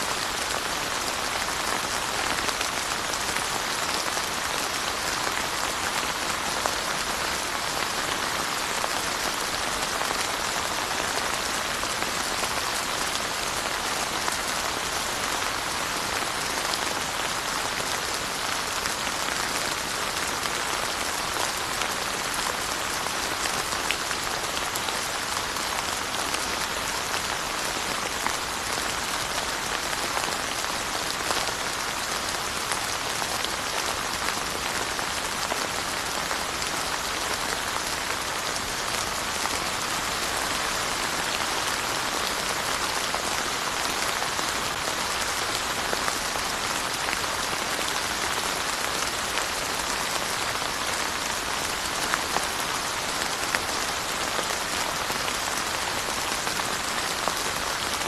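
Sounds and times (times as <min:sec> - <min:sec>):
steady rain hiss: 0:00.0 - 0:58.0.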